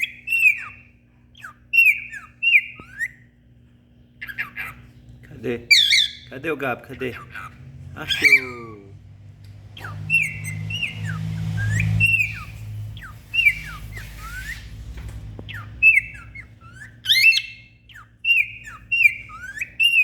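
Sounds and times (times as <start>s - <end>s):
cockatiel whistling chirpy notes: 0.0s - 3.2s, 9.8s - 14.8s, 15.5s - 20.0s.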